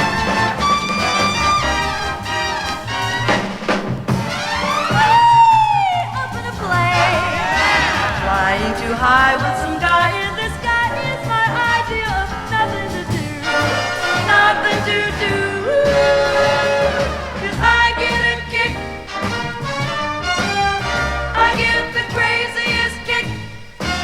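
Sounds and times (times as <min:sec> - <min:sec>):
swing jazz from vinyl record: 0:00.0 - 0:24.0.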